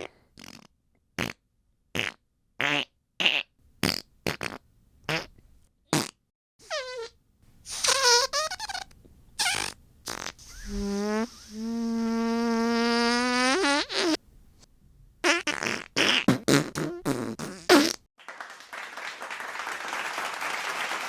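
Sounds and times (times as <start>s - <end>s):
fart sound effects: 5.9s - 14.2s, 15.2s - 18.1s
applause-like hiss: 18.2s - 21.0s.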